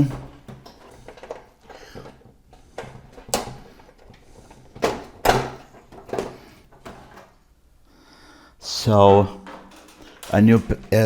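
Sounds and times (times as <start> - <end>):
plastic clicks and knocks: 0.0 - 7.3.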